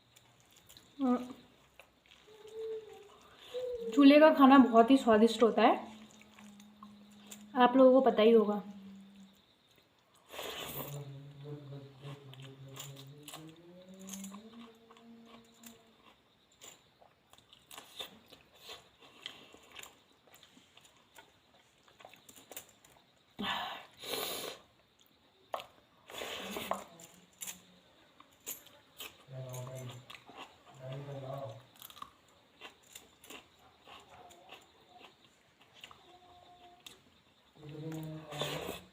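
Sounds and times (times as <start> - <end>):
person chewing food: 0.0 - 3.7, 5.9 - 7.5, 12.1 - 23.2, 28.2 - 31.0, 31.7 - 38.9
person humming: 12.7 - 15.9.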